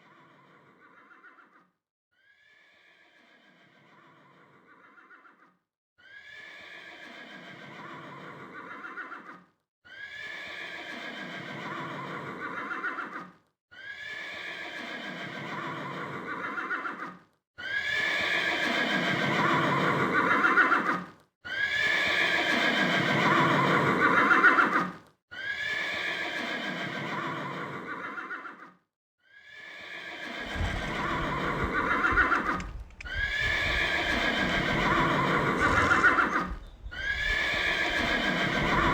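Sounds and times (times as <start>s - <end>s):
horse whinnying: 17.6s - 20.9s, 21.5s - 22.6s, 30.2s - 38.9s.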